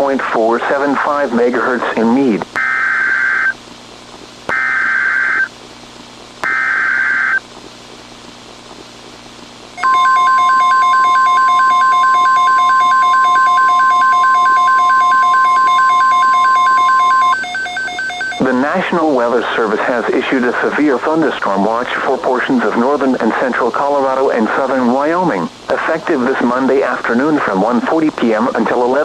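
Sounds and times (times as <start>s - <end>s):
steady loud warning beep: 4.5s - 5.5s, 6.4s - 7.4s, 9.8s - 18.6s
fast-pulsing electronic tone: 6.4s - 7.4s
shrill warbling data bursts: 6.4s - 7.4s, 9.8s - 18.5s.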